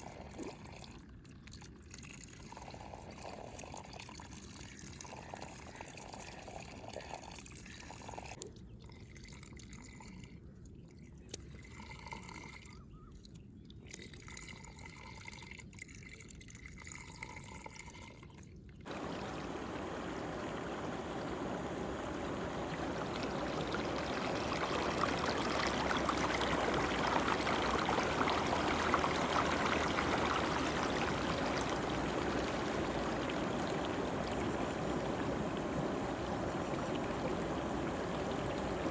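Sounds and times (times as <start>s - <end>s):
rush of flowing water: 18.9s - 38.9s
water trickling and dripping: 18.9s - 38.9s.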